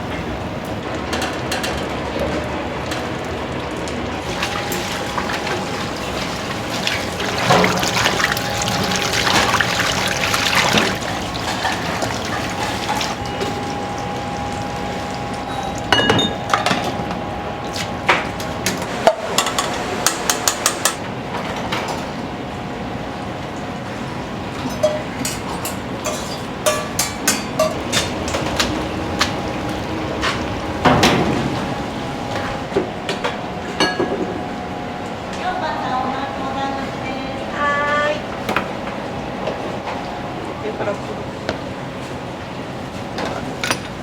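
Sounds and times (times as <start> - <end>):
rushing water: 3.7 - 15.9
dishes and utensils clinking: 15.5 - 16.9, 24.6 - 28.7, 33.8 - 34.3, 43.2 - 44.0.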